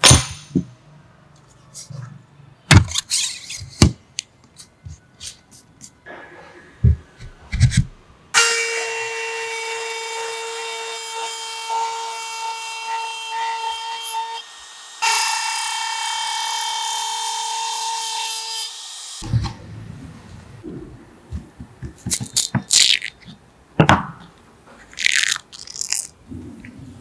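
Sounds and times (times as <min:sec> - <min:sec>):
electric planer planing wood: 0:08.4 - 0:19.2.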